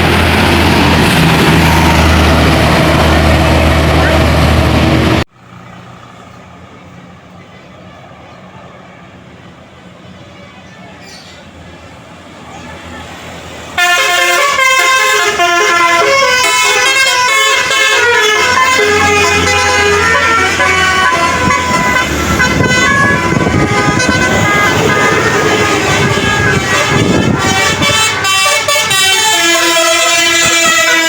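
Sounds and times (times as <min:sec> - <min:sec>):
low bus rumble: 0:00.0 - 0:31.0
bus musical air horn: 0:13.8 - 0:31.0.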